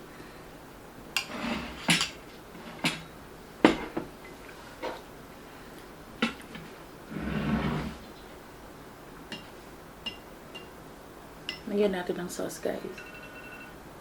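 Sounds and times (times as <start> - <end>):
cutlery and dishes clinking: 1.2 - 2.2.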